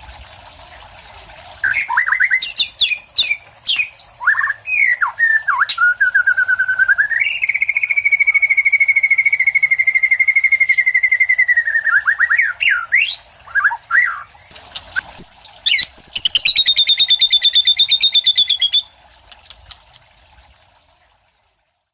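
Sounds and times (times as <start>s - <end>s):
songbird trilling and whistling: 1.6s - 18.9s.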